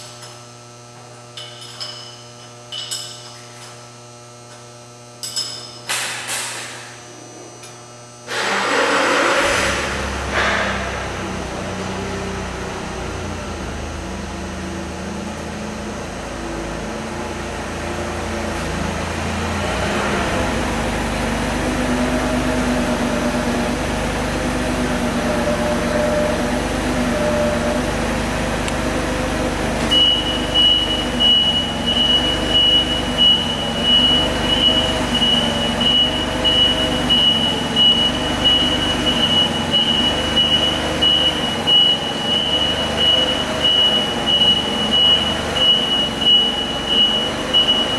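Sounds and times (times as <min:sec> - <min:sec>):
high-pitched warning beeping: 0:29.8 - 0:47.9.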